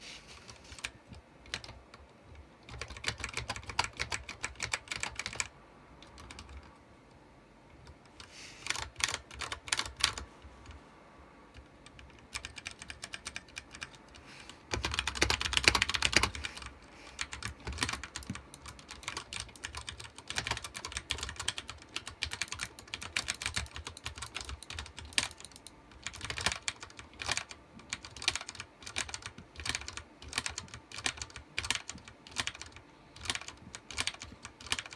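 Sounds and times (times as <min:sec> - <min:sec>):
mechanical keyboard typing: 0:00.5 - 0:06.8, 0:07.8 - 0:10.8, 0:11.5 - 0:34.9.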